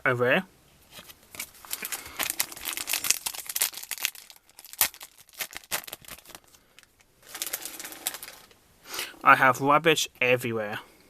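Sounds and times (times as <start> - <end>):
foil wrappers crinkling and tearing: 1.0 - 8.6.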